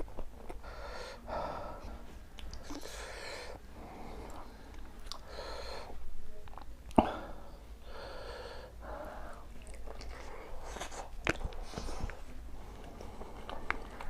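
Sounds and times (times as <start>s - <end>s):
man breathing heavily: 0.0s - 6.1s, 7.0s - 9.5s.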